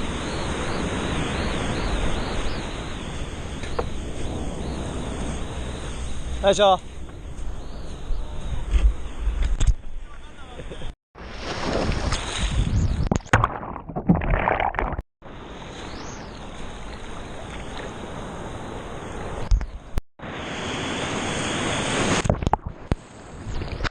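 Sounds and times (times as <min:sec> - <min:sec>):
wind rumble on microphone: 0:00.0 - 0:10.4, 0:11.7 - 0:13.2
wind and surf rushing: 0:00.0 - 0:13.1, 0:15.2 - 0:23.9.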